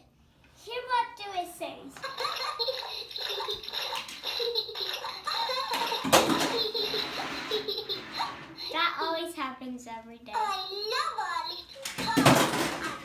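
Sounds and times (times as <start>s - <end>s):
toy electronic sound effects: 2.2s - 8.7s.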